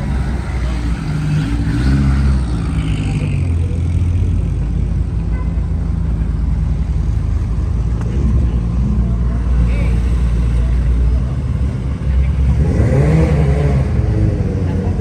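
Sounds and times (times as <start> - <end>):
car engine running at low revs: 0.0 - 15.0.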